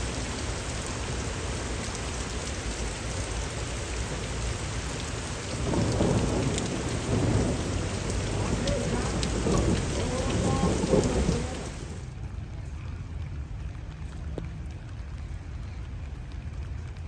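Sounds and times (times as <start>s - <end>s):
steady rain falling: 0.0s - 17.0s
low rumble of thunder: 4.0s - 12.2s.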